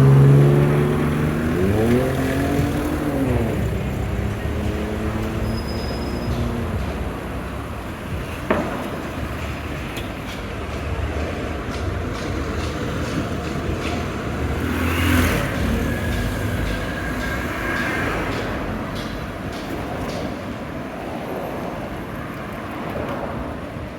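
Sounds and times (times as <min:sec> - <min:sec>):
vehicle passing: 0:00.0 - 0:08.3, 0:12.4 - 0:19.6
street traffic rumble: 0:00.0 - 0:23.9.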